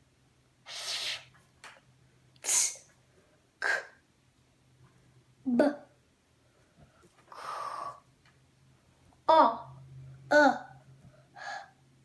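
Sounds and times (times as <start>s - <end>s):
sharp high hiss: 0.6s - 1.3s
child making breathy puffs: 0.7s - 1.3s.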